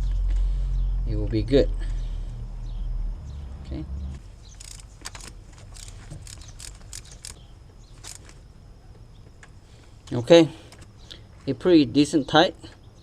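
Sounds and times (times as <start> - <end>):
ratchet wrench clicking: 4.6 - 7.4.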